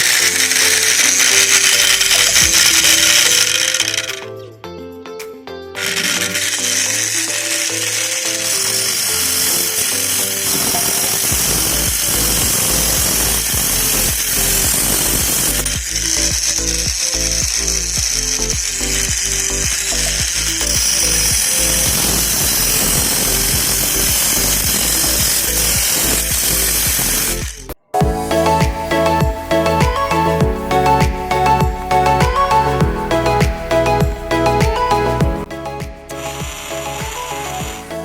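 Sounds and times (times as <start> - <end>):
angle grinder running with high hiss: 0.0 - 4.2, 5.8 - 27.6
background music with a beat: 10.5 - 38.0.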